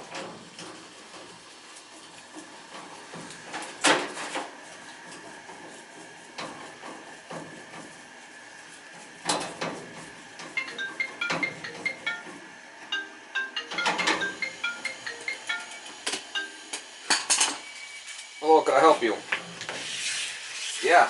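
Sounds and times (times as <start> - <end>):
mobile phone ringing with beeps: 10.6 - 17.0.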